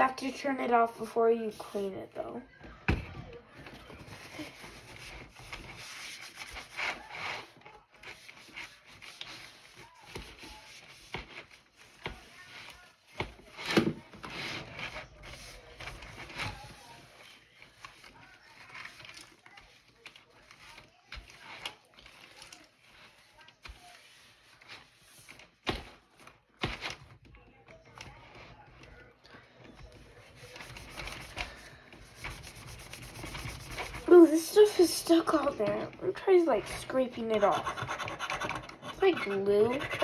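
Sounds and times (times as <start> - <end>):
scrubbing on computer keyboard: 29.7 - 40.0.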